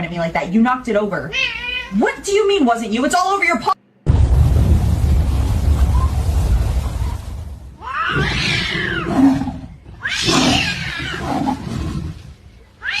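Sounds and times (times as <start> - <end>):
low rumbling noise: 3.9 - 10.0
cat yowling: 7.8 - 9.1, 12.8 - 13.0.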